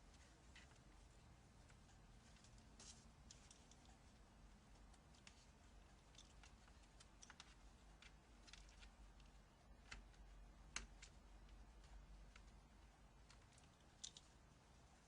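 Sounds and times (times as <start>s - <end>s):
small clicks and taps: 4.8s - 14.3s.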